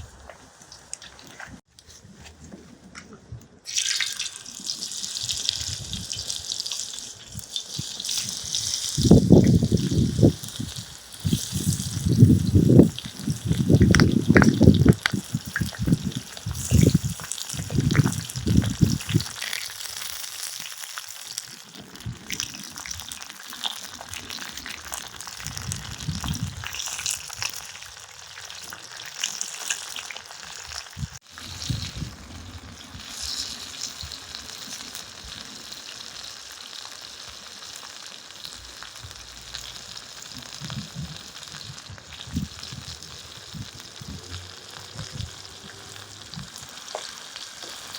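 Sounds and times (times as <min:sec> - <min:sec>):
food sizzling in a pan: 0:03.7 - 0:47.9.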